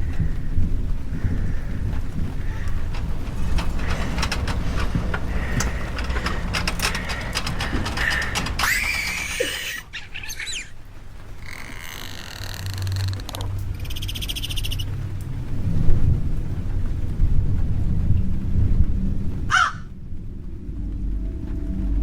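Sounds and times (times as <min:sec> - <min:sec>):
heavy low rumble: 0:00.0 - 0:22.0
harsh animal cry: 0:01.1 - 0:10.8, 0:19.5 - 0:19.9.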